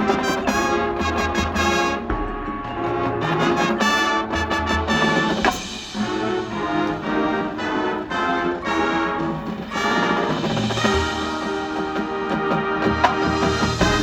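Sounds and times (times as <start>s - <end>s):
marching band playing: 0.0s - 14.0s
sharp percussion hit: 0.5s - 7.8s, 13.0s - 14.0s.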